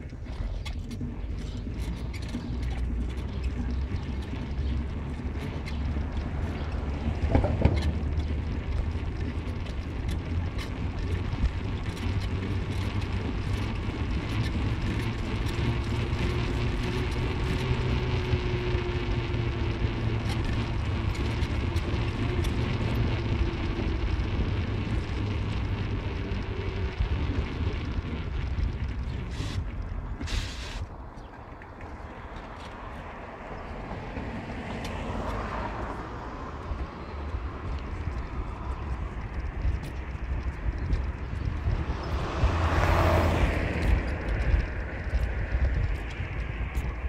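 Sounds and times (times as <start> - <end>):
car road and engine noise: 0.0 - 47.0
faint steady whine: 0.0 - 47.0.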